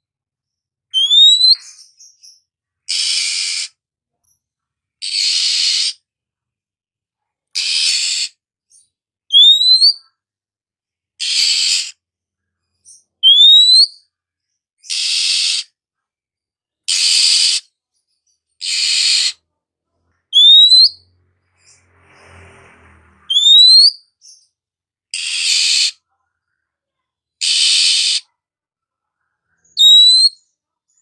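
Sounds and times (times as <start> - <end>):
bird whistling: 1.0 - 1.8, 2.9 - 3.7, 5.0 - 6.0, 9.3 - 10.0, 13.2 - 14.0, 20.3 - 21.0, 23.3 - 24.0, 29.8 - 30.4
bird harsh scolding calls: 2.9 - 3.7, 5.0 - 6.0, 7.6 - 8.4, 11.2 - 11.9, 14.8 - 15.7, 16.9 - 17.7, 18.6 - 19.4, 27.4 - 28.2.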